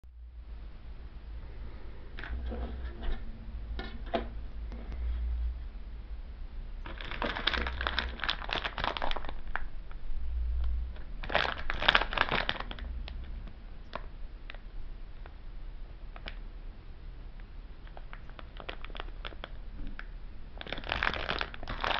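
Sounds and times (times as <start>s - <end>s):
plastic wrapping crinkling: 6.8s - 9.7s, 11.0s - 13.3s, 17.8s - 21.9s.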